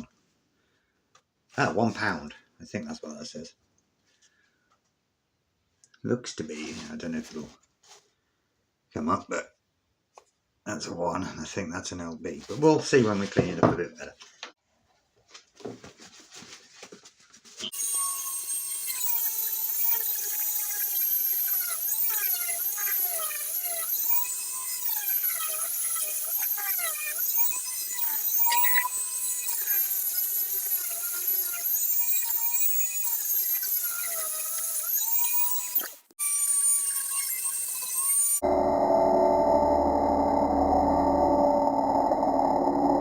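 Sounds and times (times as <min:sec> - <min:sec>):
rotary tool whining on metal: 0:17.7 - 0:43.0.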